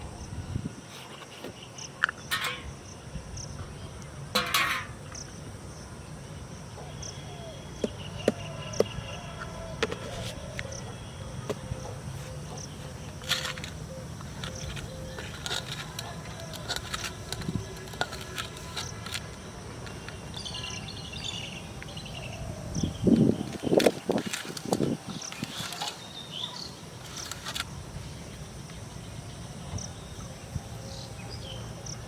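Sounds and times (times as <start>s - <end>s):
insects: 0.0s - 32.0s
bird chirping: 5.0s - 19.1s
background hiss: 10.3s - 32.0s.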